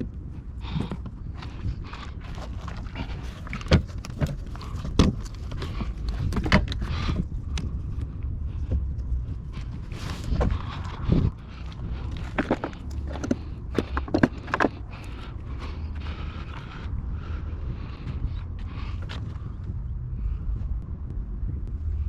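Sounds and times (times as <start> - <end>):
low steady rumble: 0.0 - 22.0
hand tools clicking and knocking: 11.7 - 15.1.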